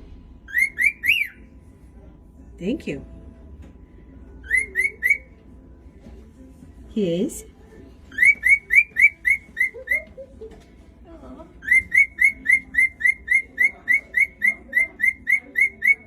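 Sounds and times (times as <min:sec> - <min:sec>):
cockatiel whistling: 0:00.5 - 0:01.4, 0:04.4 - 0:05.3, 0:08.1 - 0:10.2, 0:11.6 - 0:16.0.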